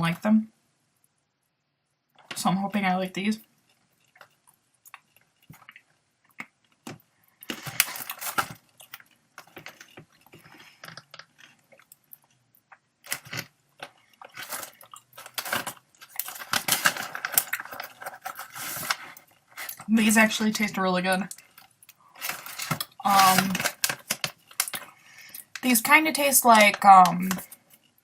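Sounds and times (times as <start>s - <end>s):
crunchy chewing: 3.6s - 19.9s
plastic pouch crinkling: 7.4s - 12.4s, 13.0s - 27.9s.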